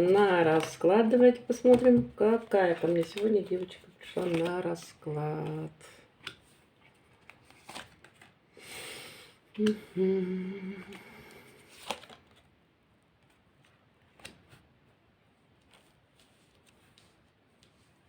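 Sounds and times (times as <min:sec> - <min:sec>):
cards rustling: 0:00.0 - 0:08.4, 0:10.8 - 0:12.5
cards tapping down: 0:01.5 - 0:04.6
woman humming: 0:09.6 - 0:11.2.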